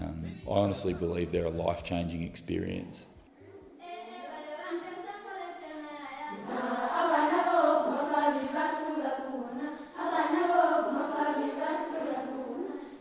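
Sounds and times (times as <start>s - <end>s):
group of voices singing: 6.3s - 13.0s.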